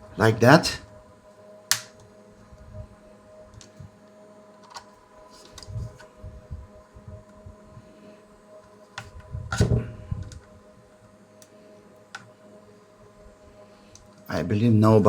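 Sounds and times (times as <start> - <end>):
small clicks and knocks of tools: 1.7 - 2.1, 4.6 - 6.1.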